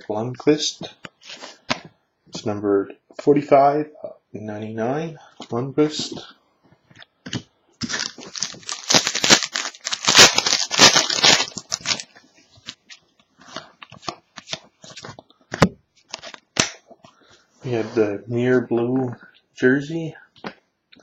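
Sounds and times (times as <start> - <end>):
card pack wrapper crinkling: 7.8 - 12.9
cards rustling and clicking: 7.8 - 16.8.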